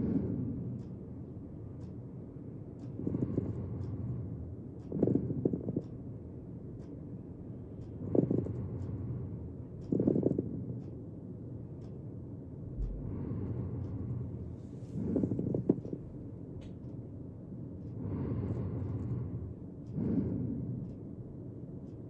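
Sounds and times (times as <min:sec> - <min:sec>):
breath sounds through stethoscope: 0:00.0 - 0:01.0, 0:02.8 - 0:06.0, 0:07.8 - 0:10.9, 0:12.8 - 0:16.1, 0:17.8 - 0:21.1.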